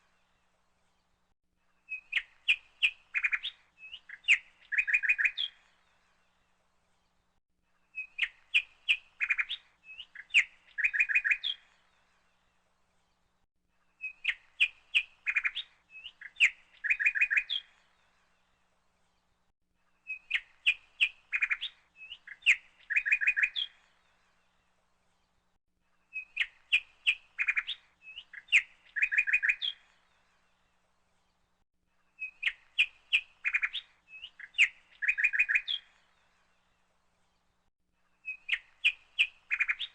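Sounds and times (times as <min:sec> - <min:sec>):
birds chirping: 0:32.2 - 0:37.6, 0:38.2 - 0:39.9.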